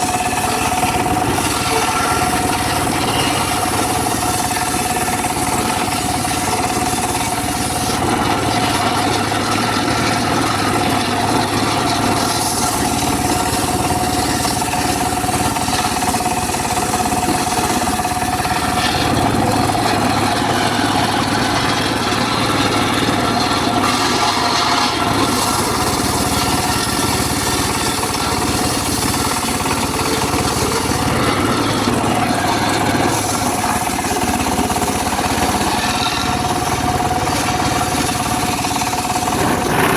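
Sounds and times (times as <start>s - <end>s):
high-pitched saw blade whine: 0.0s - 21.3s
circular saw cutting wood: 0.0s - 39.9s.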